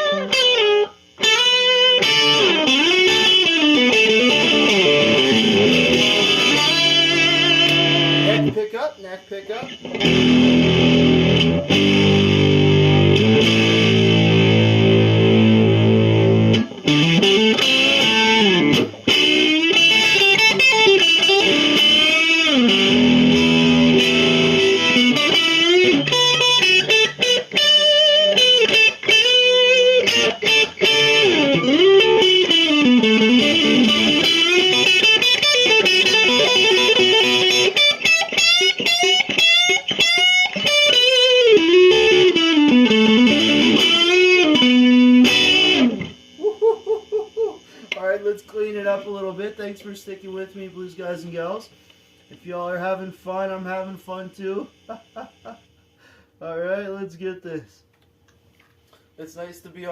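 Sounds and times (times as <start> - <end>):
overdriven electric guitar: 0.0 - 8.6, 9.6 - 48.0.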